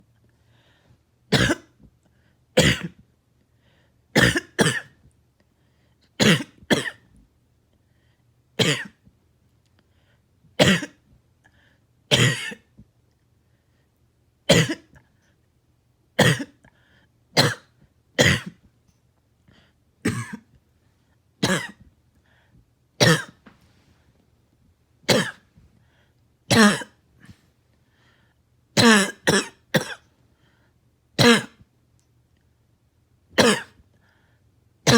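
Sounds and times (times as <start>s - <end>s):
person coughing harshly: 1.3s - 1.8s, 2.6s - 3.0s, 4.2s - 5.0s, 6.2s - 7.1s, 8.6s - 9.0s, 10.6s - 11.0s, 12.1s - 12.7s, 14.5s - 15.0s, 16.2s - 16.7s, 17.4s - 18.6s, 20.0s - 20.6s, 21.4s - 21.8s, 23.0s - 23.4s, 25.1s - 25.5s, 26.5s - 27.0s, 28.8s - 30.1s, 31.2s - 31.6s, 33.4s - 33.8s.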